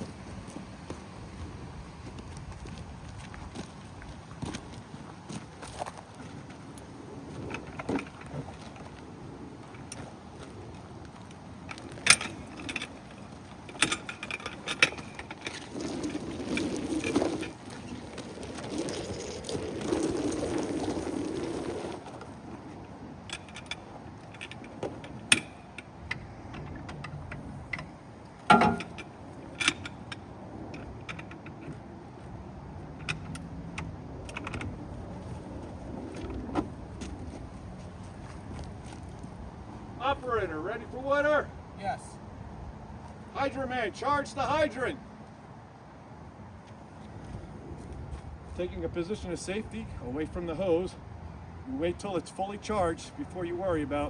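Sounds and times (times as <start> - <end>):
hose rustling: 4.6 - 22.6, 27.2 - 29.0
metallic clanks of hose couplings: 11.7 - 17.6, 27.0 - 30.2.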